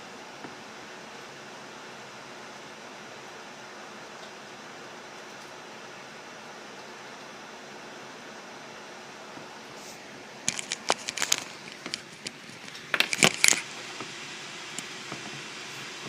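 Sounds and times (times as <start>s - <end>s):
laptop cooling fan hiss: 0.0s - 16.0s
sharp clicks and knocks: 10.5s - 14.1s.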